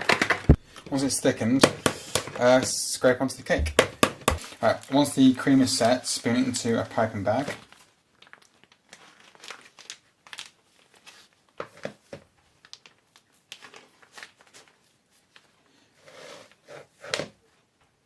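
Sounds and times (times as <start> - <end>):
plastic piping bag crinkling: 6.9 - 15.5.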